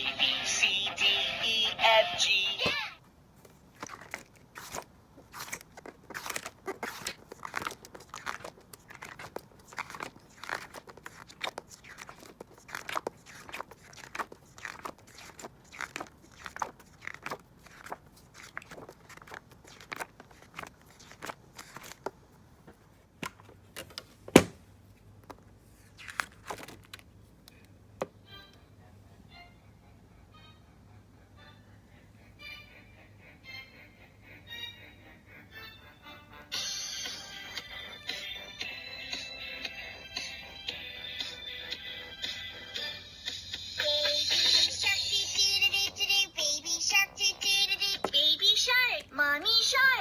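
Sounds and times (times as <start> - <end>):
crinkling crunching clicks: 3.6 - 22.2.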